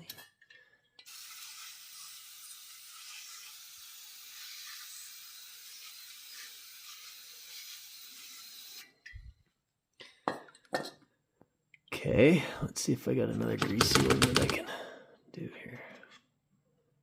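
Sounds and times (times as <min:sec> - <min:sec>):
aerosol can spraying: 0:01.0 - 0:08.8.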